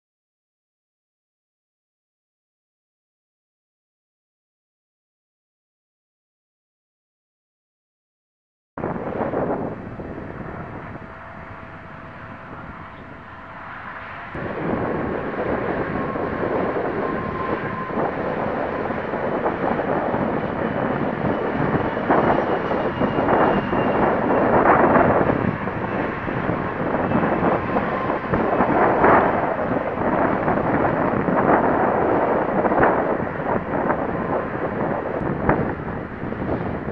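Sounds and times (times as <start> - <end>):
rush of wind: 8.8 - 36.9.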